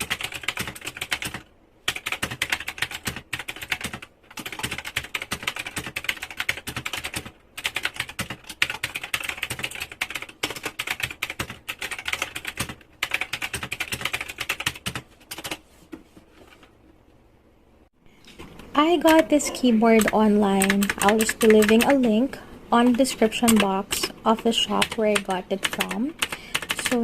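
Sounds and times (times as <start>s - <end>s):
mechanical keyboard typing: 0.0s - 15.6s, 19.8s - 27.0s.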